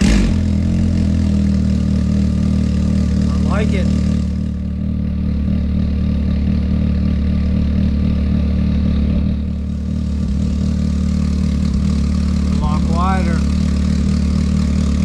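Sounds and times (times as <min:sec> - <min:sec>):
engine idling: 0:00.0 - 0:15.0.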